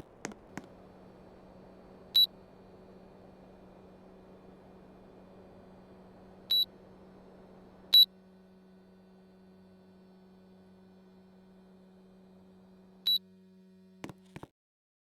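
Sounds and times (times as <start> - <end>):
steady low hum: 0.0 - 14.5
air conditioner beeps: 2.0 - 3.0, 6.2 - 6.8, 7.9 - 8.2, 13.0 - 13.4.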